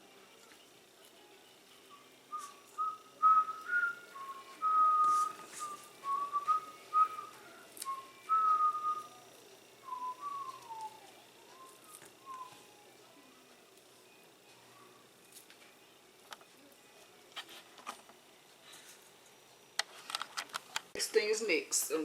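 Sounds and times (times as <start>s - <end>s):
person whistling a tune: 1.9s - 9.2s, 9.8s - 12.7s.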